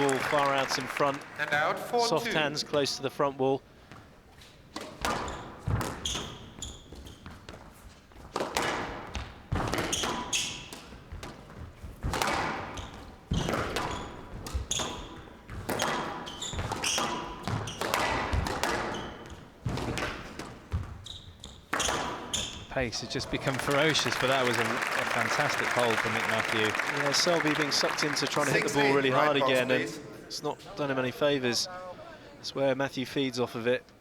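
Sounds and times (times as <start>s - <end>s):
shoes squeaking on court floor: 3.9s - 29.7s
racket striking squash ball: 4.8s - 6.5s, 8.3s - 21.0s, 21.6s - 22.7s.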